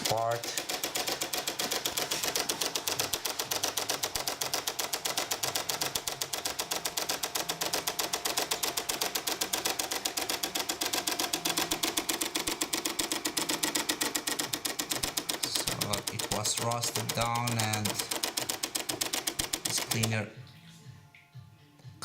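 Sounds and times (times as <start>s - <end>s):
rapid even ticking: 0.0s - 20.2s
coffee machine pump running: 0.0s - 20.3s.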